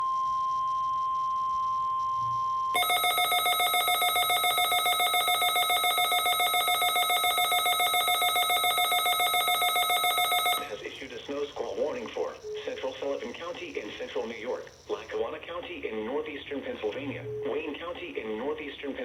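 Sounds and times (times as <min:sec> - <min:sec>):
rapid pulsing electronic beep: 0:02.8 - 0:10.7
steady warning alarm tone: 0:02.8 - 0:10.8.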